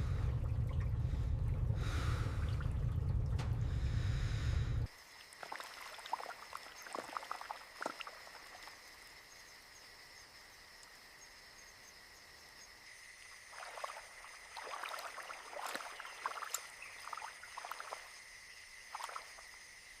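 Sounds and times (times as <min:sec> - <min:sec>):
frogs and insects calling: 0:00.0 - 0:20.0
wet clicking and splashing: 0:14.6 - 0:18.1.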